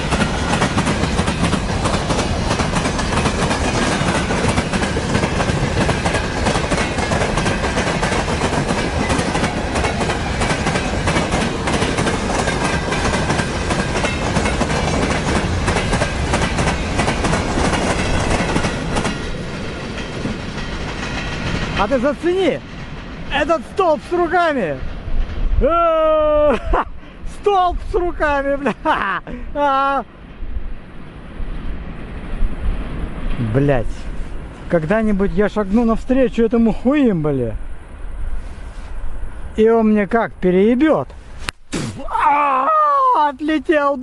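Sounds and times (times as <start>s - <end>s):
freight train wheels clattering: 0.0s - 23.8s.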